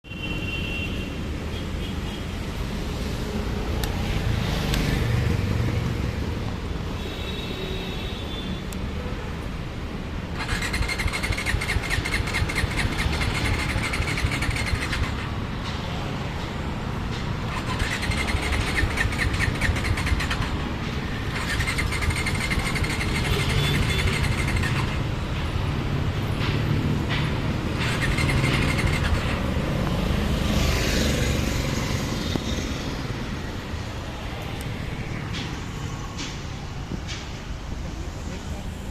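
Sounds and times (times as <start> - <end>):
starter motor cranking engine: 10.3 - 15.3, 17.4 - 25.2, 27.7 - 29.6.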